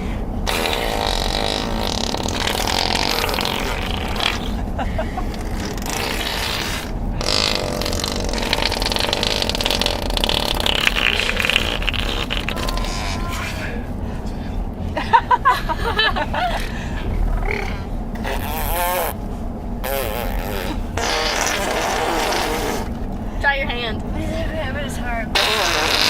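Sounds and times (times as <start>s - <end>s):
road rumble inside car: 0.0s - 26.0s
children making mouth fart noises: 0.5s - 4.6s, 5.3s - 13.4s, 18.2s - 19.2s, 19.8s - 23.0s, 25.3s - 26.0s.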